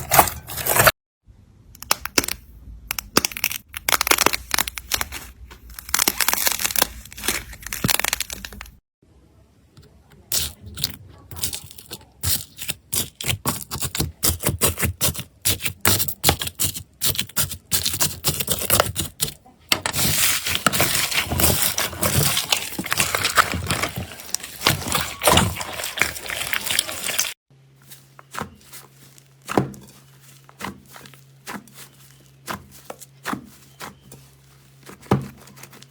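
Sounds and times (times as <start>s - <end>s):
slime crackling and popping: 1.8s - 8.8s, 20.0s - 27.4s.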